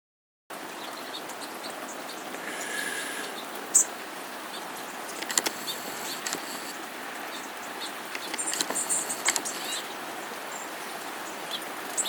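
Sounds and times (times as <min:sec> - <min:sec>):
small birds chirping: 0:00.6 - 0:12.0
steady background hiss: 0:01.9 - 0:12.0
held bird call: 0:04.5 - 0:10.0.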